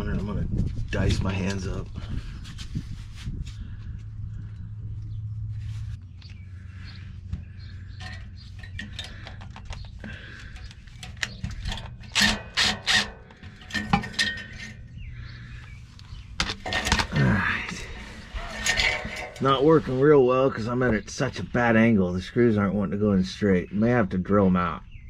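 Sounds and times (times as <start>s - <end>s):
metal clicks and clinks: 8.0s - 14.9s
cordless drill bursts: 12.1s - 13.1s.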